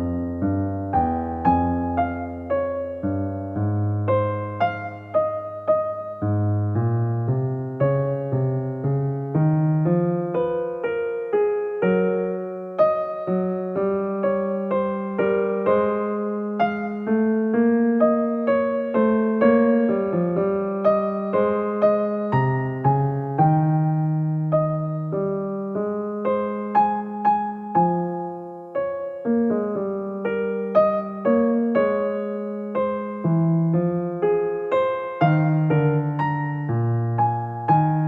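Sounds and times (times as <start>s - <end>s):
gentle piano melody: 0.0s - 38.0s.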